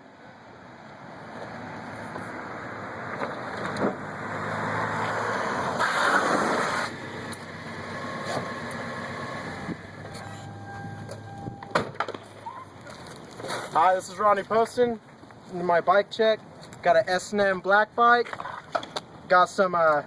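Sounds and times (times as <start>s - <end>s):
vehicle passing by: 1.0s - 11.0s.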